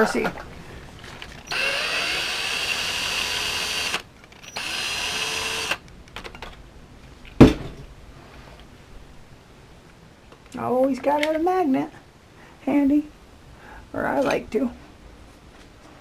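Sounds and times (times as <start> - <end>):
cordless power driver whirring: 1.4 - 5.8
sharp knock: 7.4 - 7.8.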